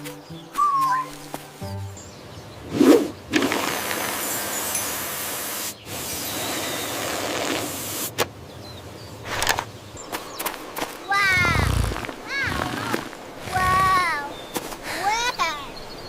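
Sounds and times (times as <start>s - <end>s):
steady hiss: 3.4s - 8.2s.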